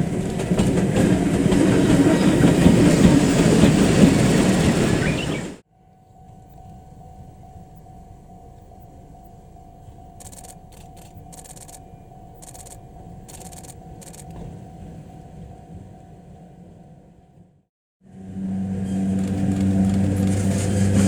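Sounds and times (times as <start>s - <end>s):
model train rumbling: 0.0s - 5.6s, 18.1s - 21.0s.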